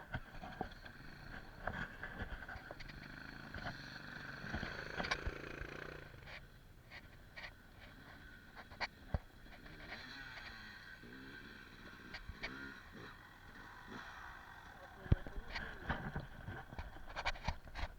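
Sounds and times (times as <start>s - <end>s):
motorcycle engine idling: 0.0s - 17.9s
scattered clicks and knocks: 15.1s - 17.9s.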